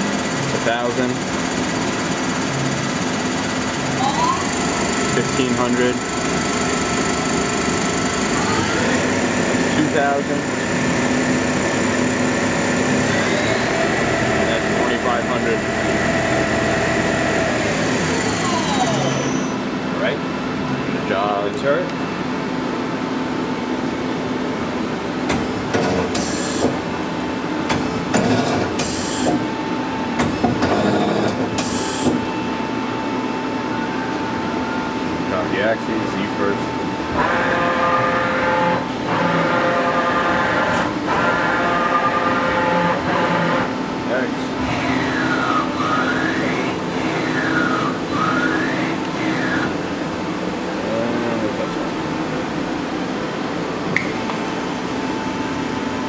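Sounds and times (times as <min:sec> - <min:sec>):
machine hum with whine: 0:00.0 - 0:56.0
servo drives whining: 0:08.1 - 0:19.6.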